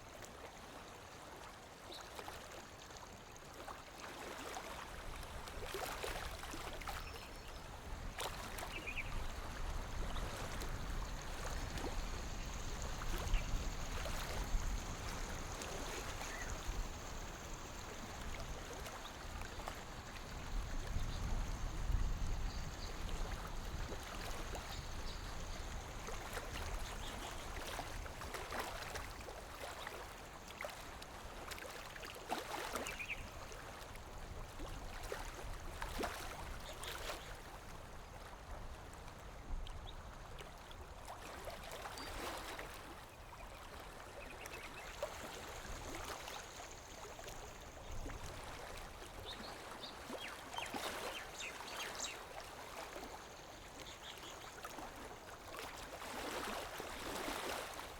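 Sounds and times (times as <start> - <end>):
lake water lapping at shore: 0.0 - 57.9.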